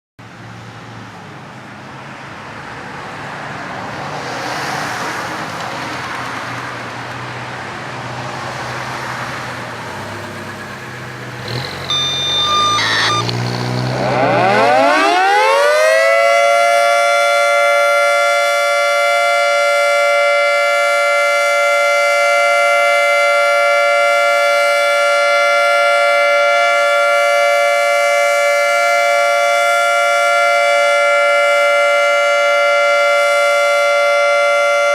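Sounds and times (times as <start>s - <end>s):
two-tone siren winding up: 11.4s - 34.9s
electronic tones burst: 11.6s - 15.1s.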